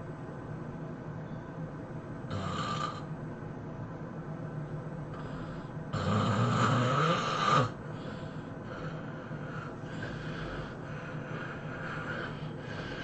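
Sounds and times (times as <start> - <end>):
person snoring: 2.3 - 3.1, 5.2 - 13.0.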